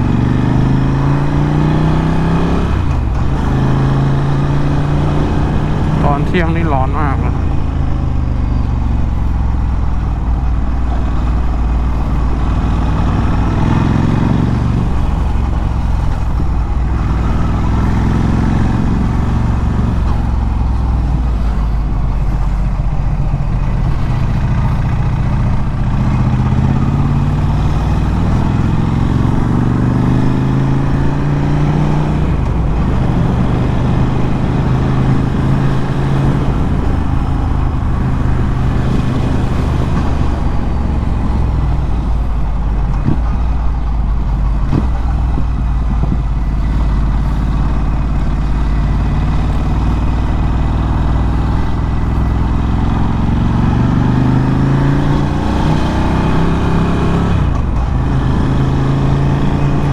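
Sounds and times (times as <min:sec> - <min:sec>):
motorcycle engine revving: 0:00.0 - 0:59.9.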